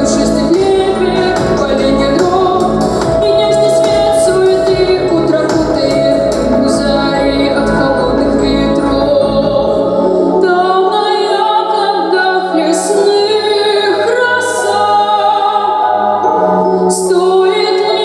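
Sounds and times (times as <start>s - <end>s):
woman singing: 0.0s - 18.0s
choir-like backing voices: 13.8s - 18.0s.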